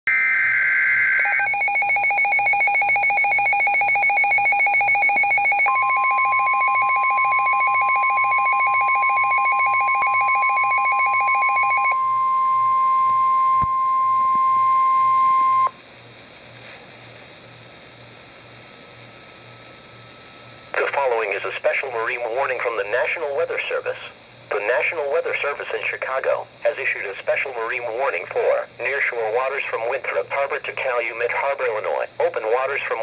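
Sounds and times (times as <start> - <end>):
steady warning alarm tone: 0.1 - 15.8
rapid electronic beeping: 1.1 - 12.0.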